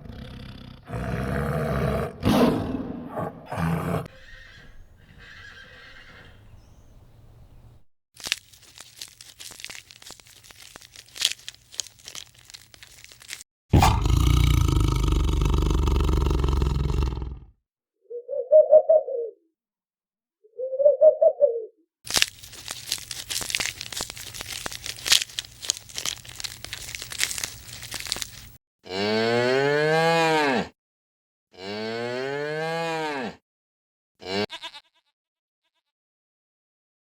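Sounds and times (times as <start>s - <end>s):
crackling noise: 22.1s - 28.6s
cow mooing: 28.9s - 30.7s, 31.6s - 33.4s, 34.2s - 34.6s.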